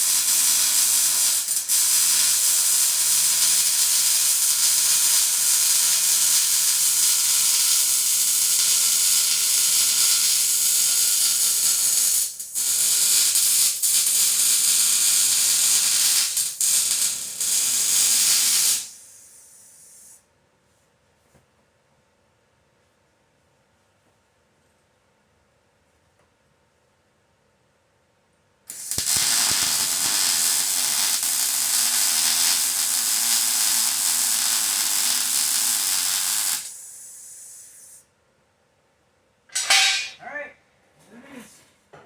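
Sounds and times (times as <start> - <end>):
welding arc crackling and hissing: 0.0 - 20.2, 28.7 - 38.0.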